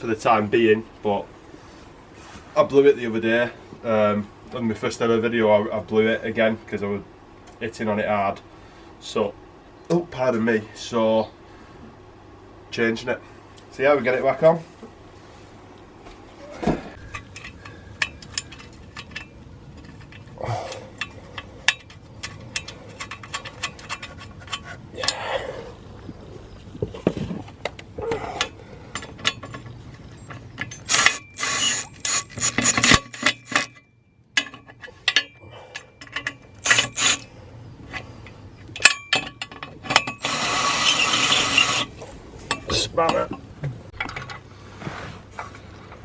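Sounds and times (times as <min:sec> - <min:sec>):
hand tools clanking on metal: 0:16.6 - 0:25.5, 0:26.9 - 0:44.5
metal rasping: 0:16.9 - 0:25.5, 0:28.0 - 0:44.4.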